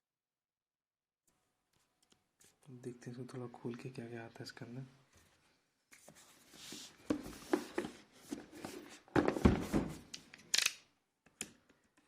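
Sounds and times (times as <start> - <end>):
box thumps: 7.1 - 10.1.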